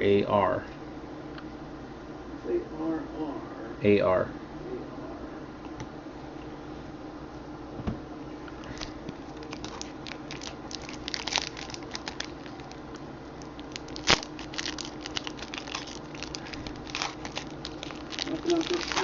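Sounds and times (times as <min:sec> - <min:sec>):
packaging crinkling and clicking: 0:08.8 - 0:19.0.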